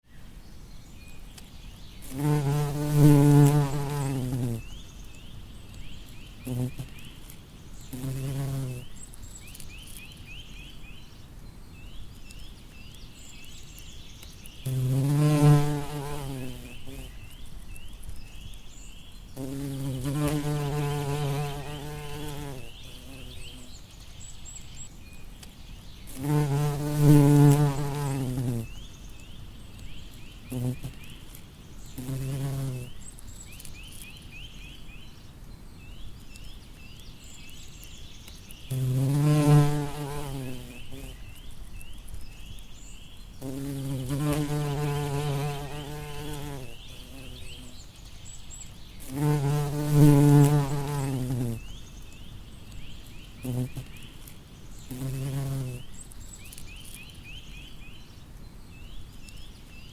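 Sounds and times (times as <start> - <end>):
bumblebee buzzing: 2.0 - 4.7, 6.4 - 7.0, 7.9 - 8.9, 14.6 - 17.1, 19.4 - 23.7, 26.1 - 28.8, 30.5 - 31.0, 32.0 - 33.0, 38.7 - 41.2, 43.4 - 47.7, 49.0 - 51.7, 53.4 - 54.0, 54.9 - 55.9.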